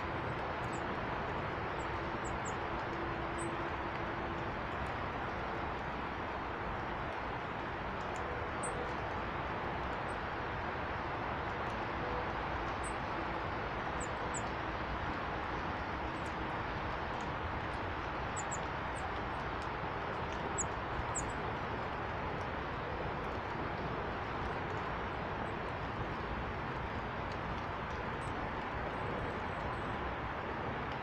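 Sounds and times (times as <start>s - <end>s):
steady rushing noise: 0.0s - 31.0s
small birds chirping: 18.3s - 19.1s.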